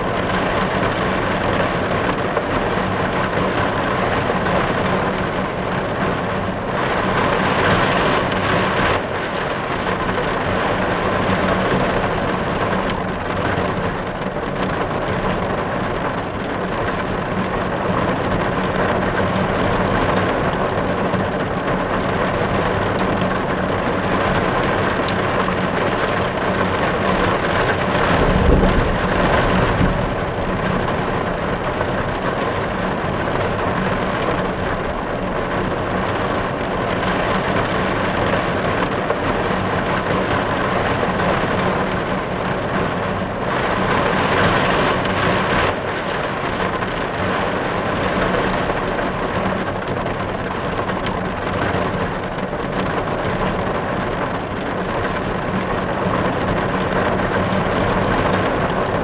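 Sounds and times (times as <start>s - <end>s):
heavy rain on car roof: 0.0s - 59.0s
low rumble: 27.6s - 32.6s.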